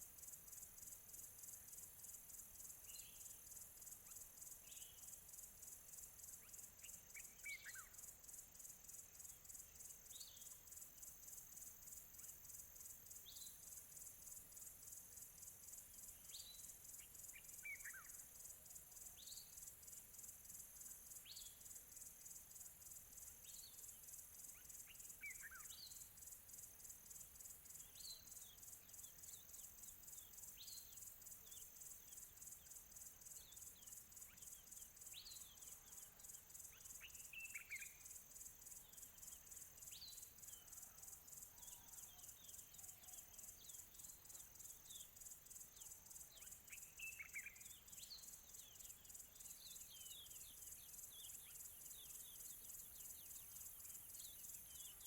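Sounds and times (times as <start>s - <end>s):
high-pitched insect chorus: 0.0s - 55.0s
bird chirps: 33.3s - 38.2s, 38.8s - 55.0s.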